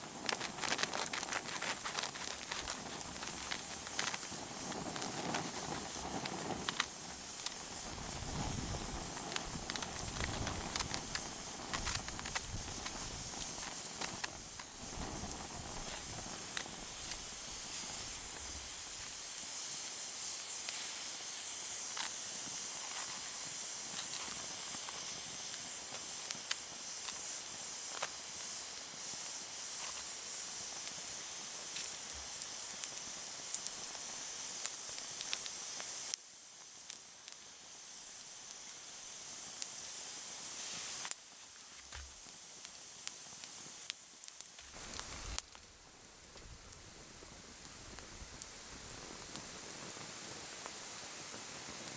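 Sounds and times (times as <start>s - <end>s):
campfire hissing: 0.0s - 51.9s
fire crackling and popping: 0.0s - 51.9s.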